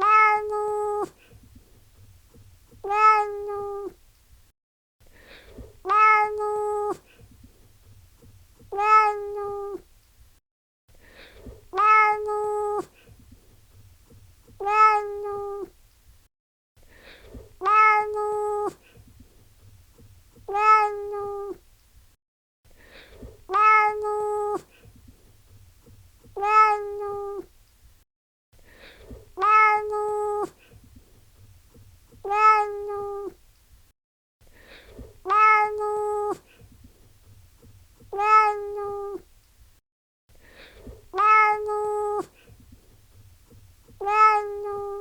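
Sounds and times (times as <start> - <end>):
cat meowing: 0.0 - 1.1, 2.8 - 4.0, 5.8 - 7.0, 8.7 - 9.8, 11.8 - 12.9, 14.6 - 15.7, 17.6 - 18.8, 20.4 - 21.6, 23.5 - 24.7, 26.3 - 27.5, 29.4 - 30.6, 32.2 - 33.4, 35.2 - 36.4, 38.1 - 39.2, 41.1 - 42.3, 44.0 - 45.0.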